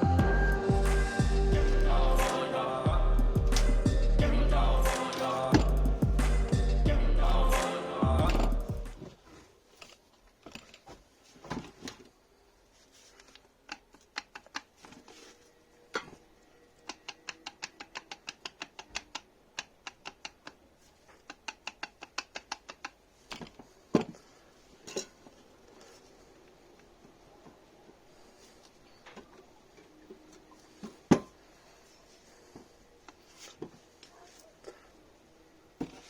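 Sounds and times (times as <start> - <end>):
sharp clicks and light knocks: 16.9 - 24.2.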